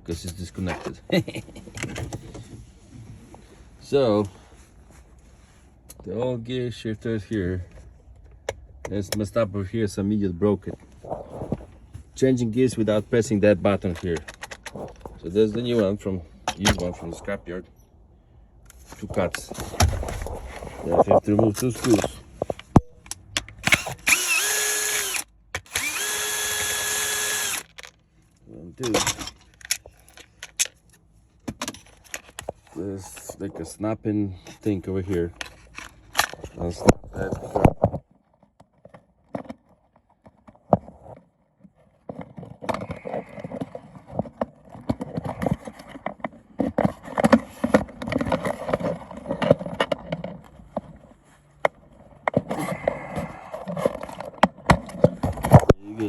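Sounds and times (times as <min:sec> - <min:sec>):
drill clicks: 0:23.4 - 0:27.9
power drill motor spinning: 0:23.6 - 0:27.8.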